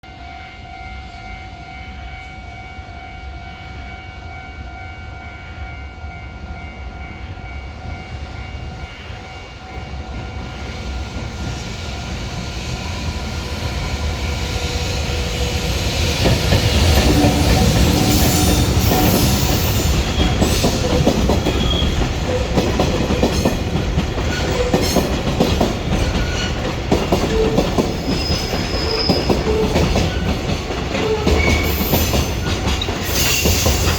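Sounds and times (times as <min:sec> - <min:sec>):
freight train passing: 0:00.0 - 0:33.9
wagon wheels clacking over rail joints: 0:16.2 - 0:33.9
wheel squeals: 0:27.2 - 0:33.9.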